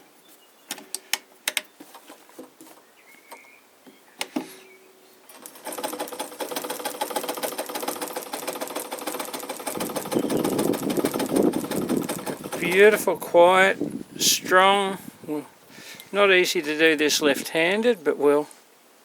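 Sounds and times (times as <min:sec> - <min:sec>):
sewing machine stitching: 0:05.4 - 0:13.0.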